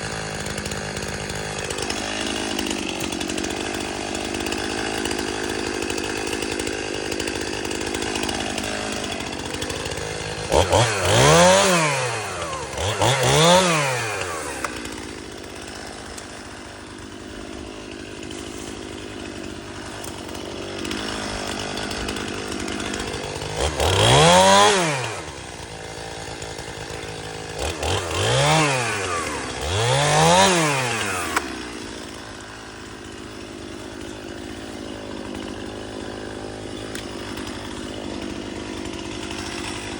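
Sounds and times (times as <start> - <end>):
chainsaw idling and revving: 0.0 - 39.9.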